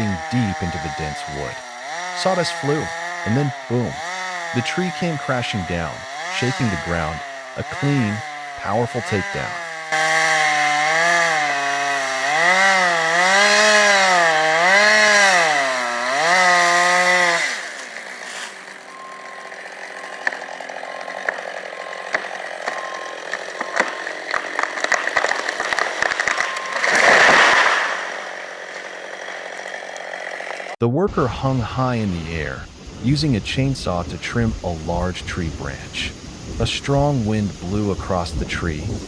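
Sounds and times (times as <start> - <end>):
chainsaw engine cutting: 0.0 - 30.8
cracks and clicks: 19.5 - 30.8.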